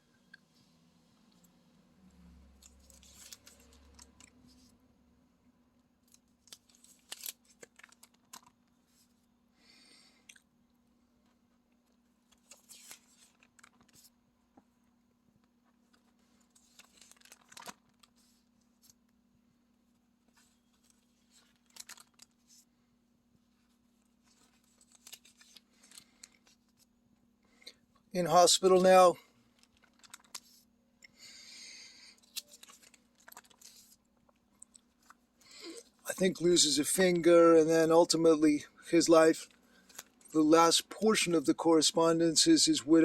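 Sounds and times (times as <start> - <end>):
faint steady hum: 0.0 - 43.0
paper and plastic rustling: 2.6 - 4.8, 6.0 - 9.2, 12.2 - 14.2, 15.7 - 19.0, 20.3 - 22.7, 23.5 - 26.9, 28.4 - 30.7, 32.1 - 37.3, 39.4 - 41.3.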